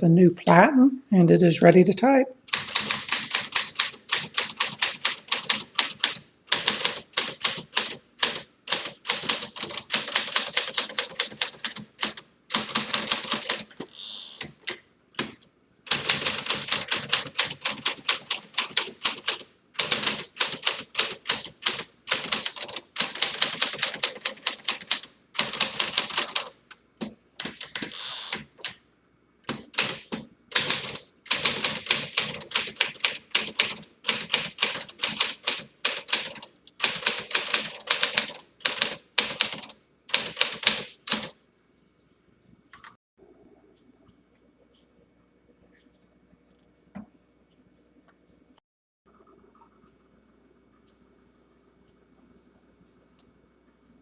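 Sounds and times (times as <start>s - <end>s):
manual typewriter key strikes: 2.5s - 13.7s, 15.9s - 26.5s, 29.5s - 41.4s.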